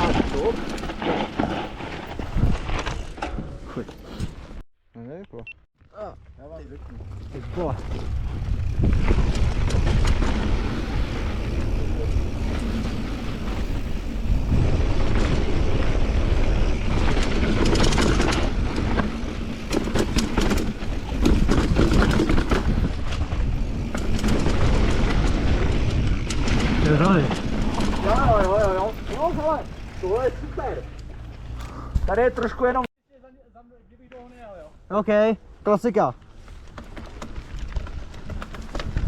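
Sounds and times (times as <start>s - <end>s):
tyres crunching on dirt: 0.0s - 3.4s, 5.8s - 32.9s
bike rattling and clicking: 0.0s - 4.6s, 6.2s - 32.8s, 36.2s - 39.0s
wind buffeting microphone: 6.9s - 30.2s.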